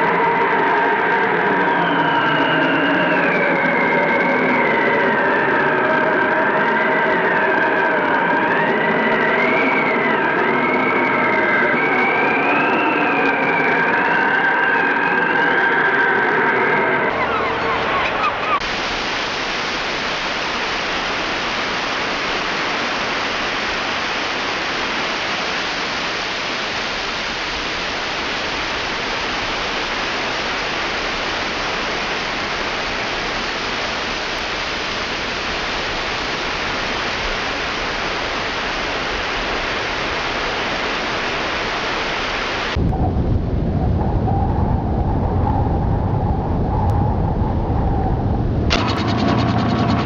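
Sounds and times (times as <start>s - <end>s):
low hum: 3.5s - 50.0s
steady rushing hiss: 18.6s - 42.8s.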